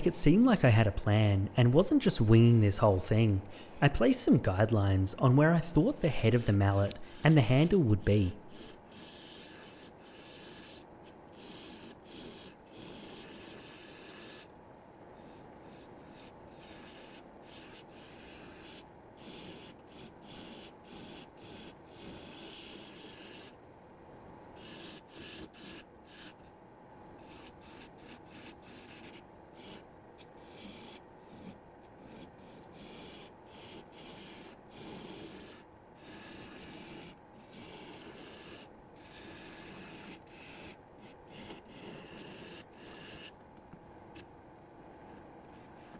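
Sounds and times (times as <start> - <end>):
lathe tool scraping wood: 0.0 - 8.8.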